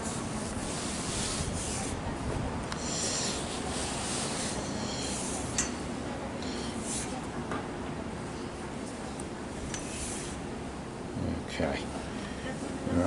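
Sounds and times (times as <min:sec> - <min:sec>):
handling noise rubbing and rustling: 0:00.0 - 0:07.4.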